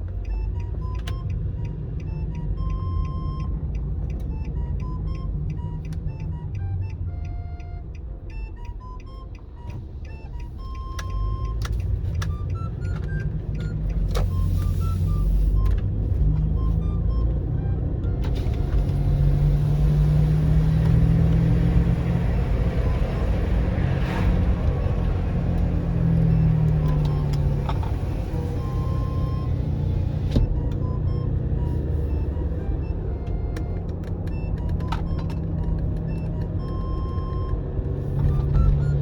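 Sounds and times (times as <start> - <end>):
short electronic beeps: 28.4 - 39.0.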